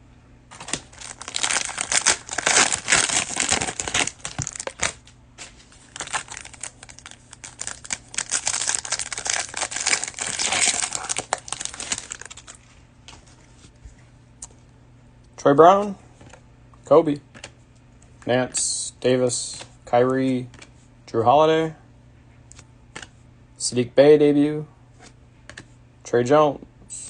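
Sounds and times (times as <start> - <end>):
cellophane wrapper crinkling: 0.5 - 12.8.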